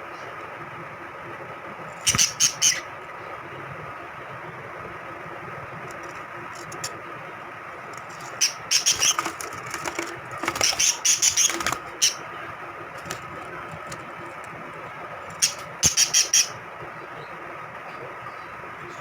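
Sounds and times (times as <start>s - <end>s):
lovebirds chirping and squawking: 1.9s - 3.0s, 7.9s - 12.4s, 13.0s - 16.6s.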